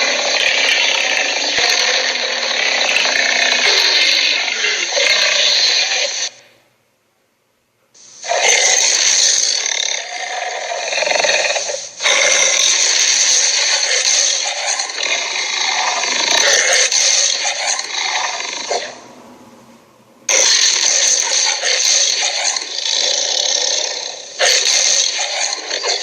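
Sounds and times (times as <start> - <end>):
raspy creature growl: 0.0 - 6.4, 8.2 - 19.2, 20.3 - 26.0.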